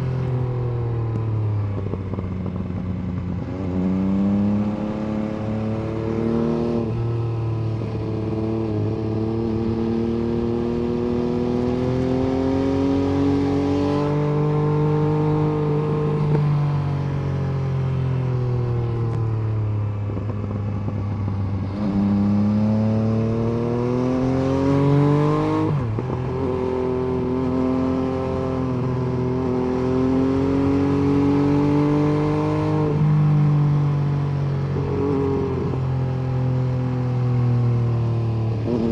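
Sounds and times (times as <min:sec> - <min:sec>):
motorcycle engine revving: 0:01.7 - 0:17.5, 0:18.9 - 0:38.9.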